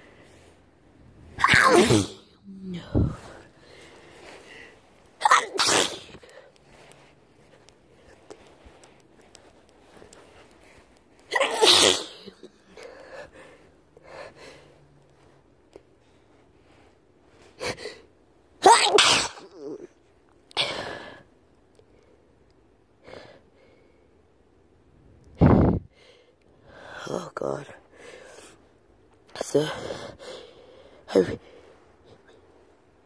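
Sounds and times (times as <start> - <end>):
person sneezing: 1.3 - 3.4, 5.2 - 6.5, 11.3 - 12.9, 18.6 - 19.9.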